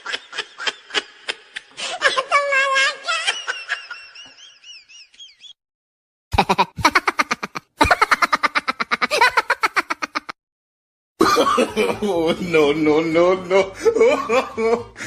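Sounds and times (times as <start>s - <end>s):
person's voice: 2.0s - 3.4s, 11.9s - 14.3s.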